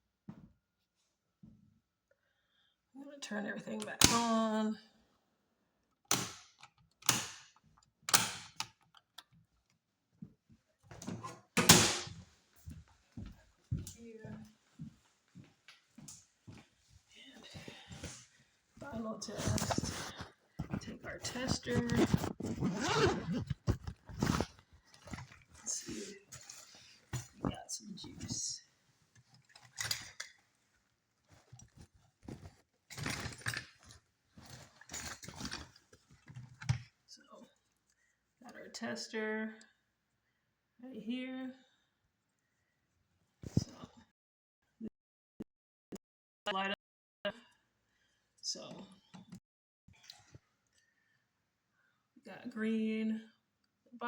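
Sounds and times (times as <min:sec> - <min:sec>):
handling noise rustling and knocking: 0:18.8 - 0:25.6, 0:29.1 - 0:37.0.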